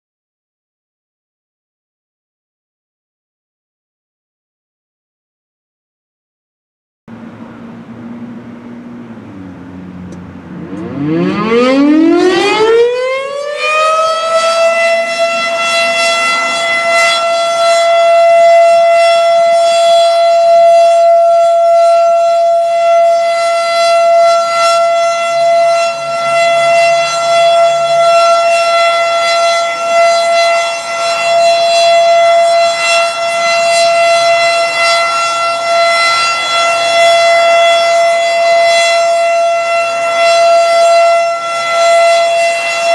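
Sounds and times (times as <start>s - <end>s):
low hum: 7.1s - 12.9s
warning siren winding up: 7.2s - 42.9s.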